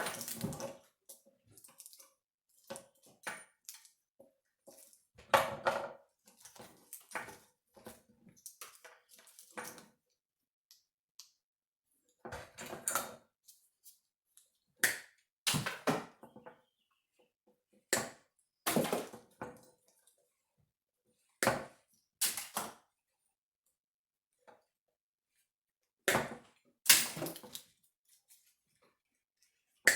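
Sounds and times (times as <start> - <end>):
wires and plastic connectors rustling: 0.1 - 4.0.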